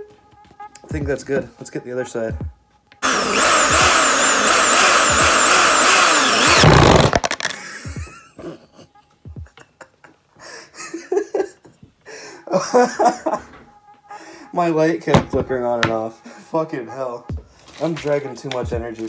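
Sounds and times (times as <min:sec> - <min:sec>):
power drill drilling into wood: 0:03.0 - 0:07.5.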